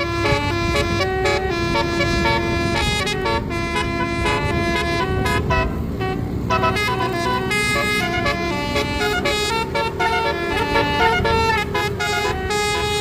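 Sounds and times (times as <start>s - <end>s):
low rumble: 0.0s - 12.6s
bus musical air horn: 0.0s - 13.0s.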